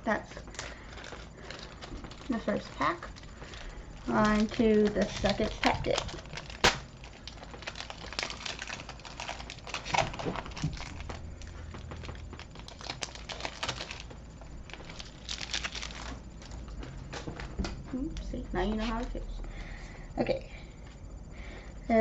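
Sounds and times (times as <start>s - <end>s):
foil wrapper crinkling: 0.3s - 17.5s.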